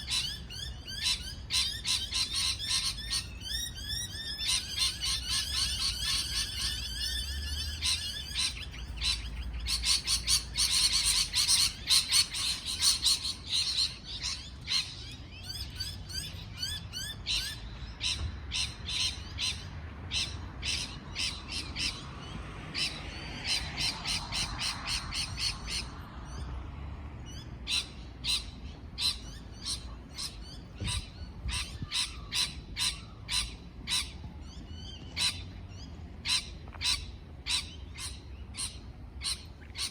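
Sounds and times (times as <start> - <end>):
parrots chirping and squawking: 0.0 - 19.6.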